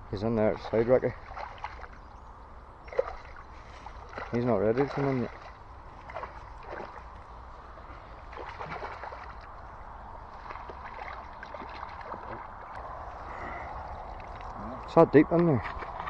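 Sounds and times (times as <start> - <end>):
faint ticks and splashes: 0.2 - 16.0
river water rushing: 2.8 - 14.6.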